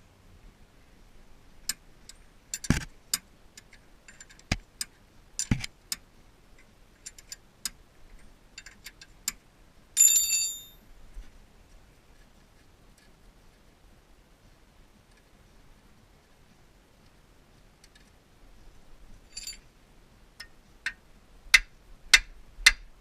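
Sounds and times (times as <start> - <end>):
bright metallic clink: 10.0 - 10.8, 19.3 - 19.6
tools and metal parts clinking: 10.0 - 10.8, 19.3 - 19.6.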